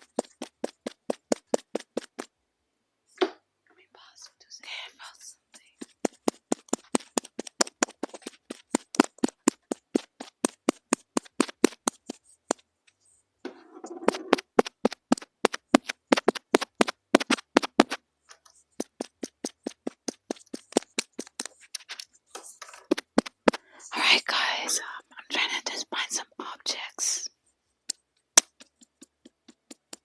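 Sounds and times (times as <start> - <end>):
rapid tapping on small object: 0.0 - 2.3, 5.5 - 12.7, 13.9 - 23.7, 27.9 - 30.0.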